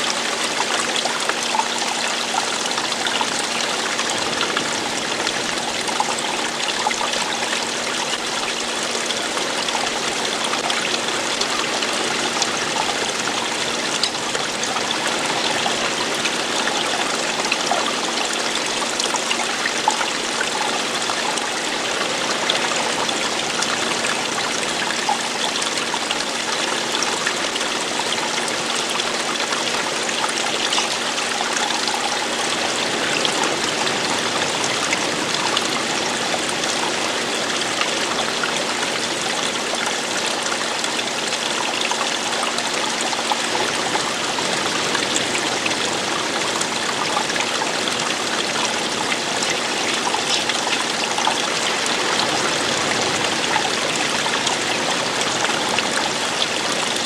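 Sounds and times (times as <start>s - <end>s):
running water rushing: 0.0s - 57.0s.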